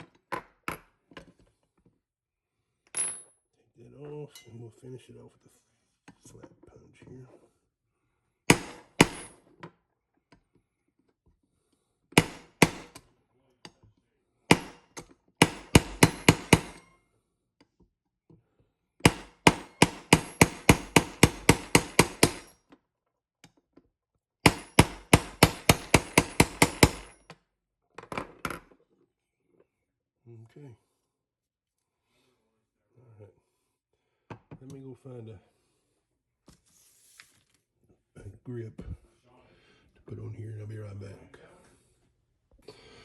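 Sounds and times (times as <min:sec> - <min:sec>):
hammer tapping metal punch: 0:14.5 - 0:16.9, 0:19.1 - 0:22.5, 0:24.5 - 0:27.3.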